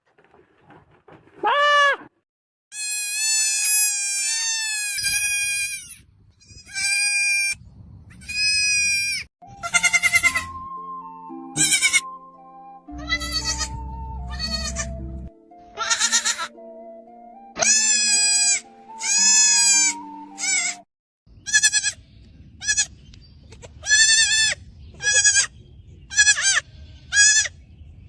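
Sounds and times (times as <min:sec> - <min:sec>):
goat kids bleating: 0:02.8 - 0:07.6, 0:08.2 - 0:10.5, 0:11.6 - 0:12.1, 0:13.0 - 0:15.0, 0:15.8 - 0:16.5, 0:17.6 - 0:20.8, 0:21.4 - 0:22.0, 0:22.6 - 0:22.9, 0:23.5 - 0:25.5, 0:26.1 - 0:27.5
background music: 0:09.4 - 0:20.8.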